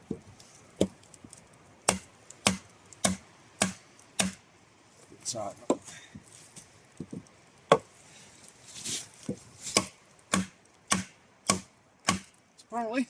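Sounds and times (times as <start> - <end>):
axe striking wood: 1.9 - 4.4, 9.7 - 12.3.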